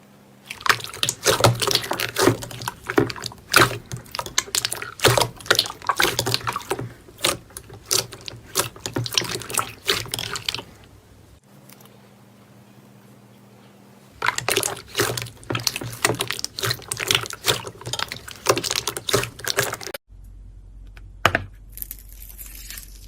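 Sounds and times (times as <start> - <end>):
slime squishing with wet clicks: 0.4 - 11.0, 14.2 - 20.0.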